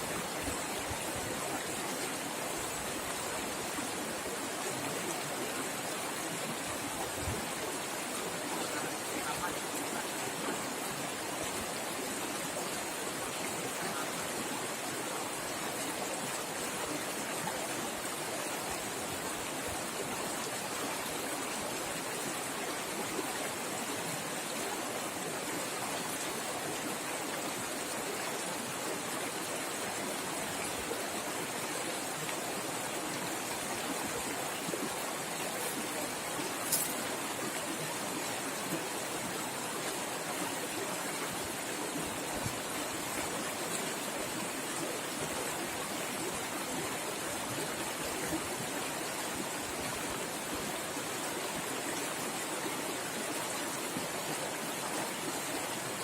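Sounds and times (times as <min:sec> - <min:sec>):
river water rushing: 0:00.0 - 0:56.0.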